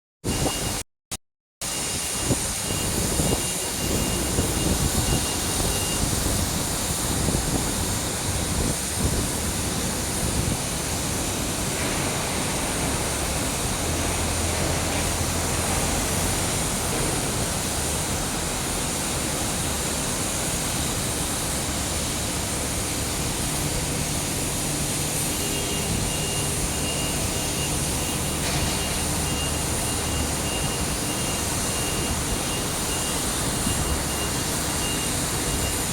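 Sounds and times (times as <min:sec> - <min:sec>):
faint high broken beeping: 0:00.3 - 0:00.8, 0:25.3 - 0:35.9
blast furnace rushing noise: 0:01.8 - 0:35.9.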